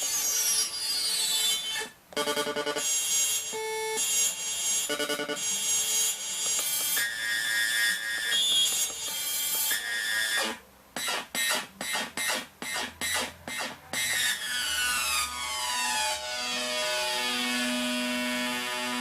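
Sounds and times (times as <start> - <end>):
short electronic beeps: 2.2 - 3.0, 4.9 - 5.5
synthesizer steady tone: 4.9 - 5.8
synthesizer sweeping falling tone: 14.2 - 17.1.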